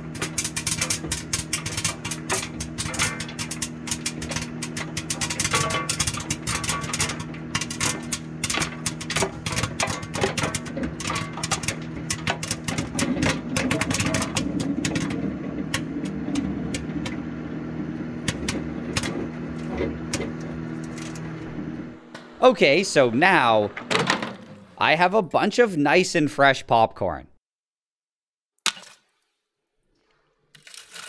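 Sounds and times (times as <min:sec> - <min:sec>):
popcorn popping: 0:00.0 - 0:21.4
microwave oven hum: 0:00.0 - 0:25.2.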